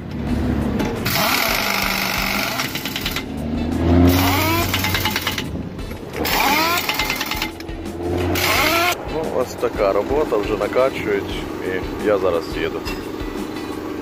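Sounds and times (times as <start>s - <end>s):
engine running: 0.0s - 14.0s
rattling pneumatic tool: 0.8s - 7.7s, 8.3s - 9.0s.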